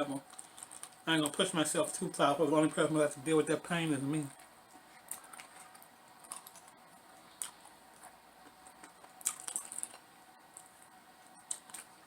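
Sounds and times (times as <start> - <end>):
person chewing with wet smacks: 4.4 - 12.0.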